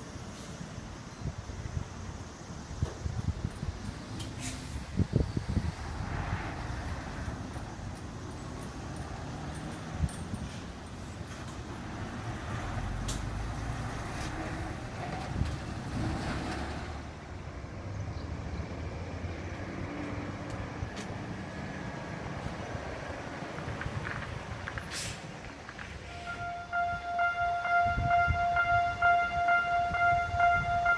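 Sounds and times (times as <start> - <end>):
vehicle engines rumbling: 0.0 - 30.9
level crossing warning bell: 26.3 - 30.9.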